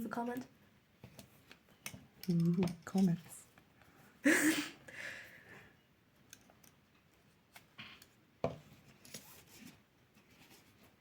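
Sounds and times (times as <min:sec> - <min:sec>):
cord being handled: 0:06.3 - 0:11.0.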